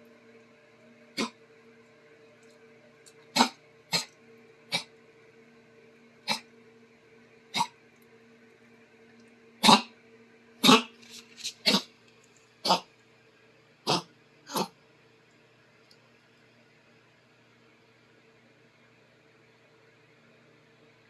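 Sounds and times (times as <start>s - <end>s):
dog coughing: 1.2s - 1.4s, 3.3s - 4.9s, 6.3s - 6.5s, 7.5s - 7.7s, 9.6s - 9.9s, 10.6s - 11.0s, 11.6s - 11.9s, 12.6s - 12.9s, 13.9s - 14.8s.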